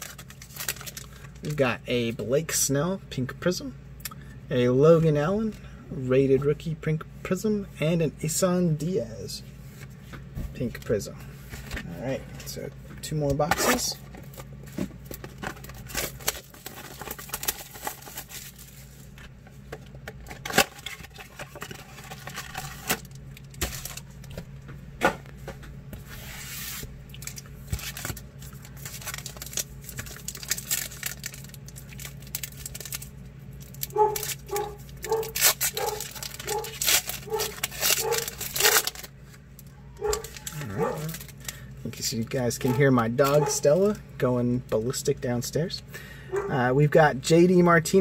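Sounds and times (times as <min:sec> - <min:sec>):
card wrappers crinkling and tearing: 0:00.0 - 0:01.7, 0:13.3 - 0:24.4, 0:26.2 - 0:44.0
dog barking: 0:33.9 - 0:38.3, 0:40.0 - 0:41.1, 0:42.7 - 0:43.7, 0:46.3 - 0:46.6.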